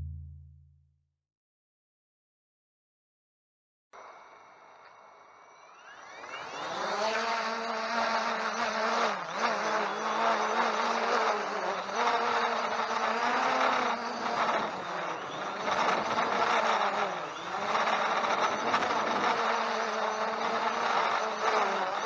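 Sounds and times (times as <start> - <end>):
drone propellers buzzing: 5.7 - 22.0.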